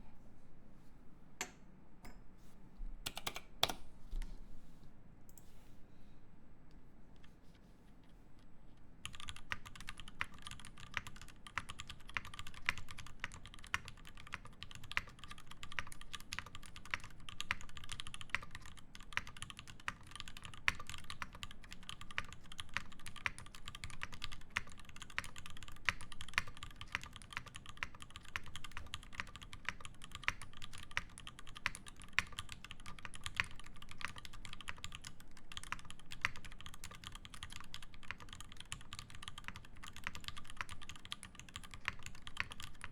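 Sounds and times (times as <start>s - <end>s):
mechanical keyboard typing: 3.0s - 3.8s, 9.0s - 42.9s.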